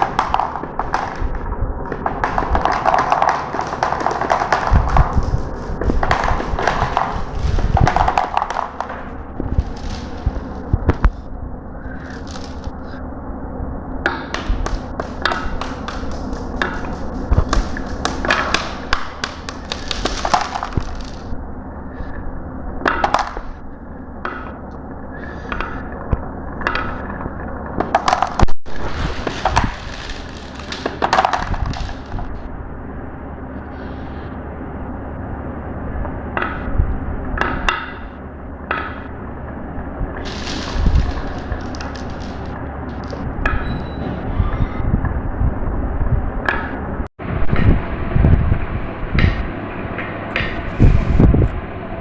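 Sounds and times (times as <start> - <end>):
marbles clattering down track: 0.0 - 10.6, 14.3 - 21.3, 27.8 - 32.3, 40.2 - 43.6
steady low hum: 0.0 - 52.0.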